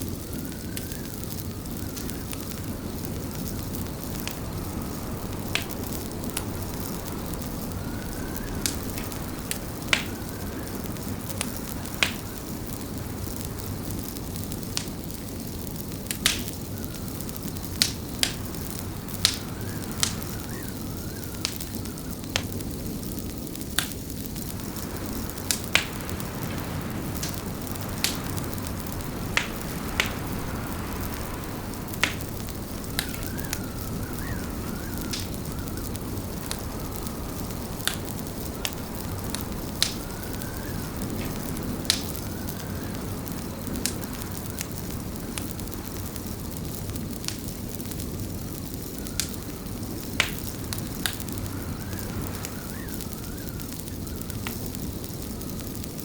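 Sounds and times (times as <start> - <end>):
fire crackling and popping: 0.0 - 56.0
low fire rumble: 0.0 - 56.0
faint wavering whistle: 6.6 - 10.8, 19.4 - 22.2, 32.2 - 37.8, 38.5 - 43.0.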